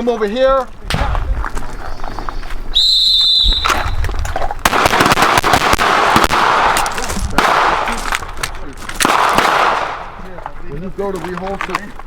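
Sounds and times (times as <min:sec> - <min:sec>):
pistol gunfire: 0:00.9 - 0:02.0, 0:04.6 - 0:08.1, 0:09.0 - 0:10.1.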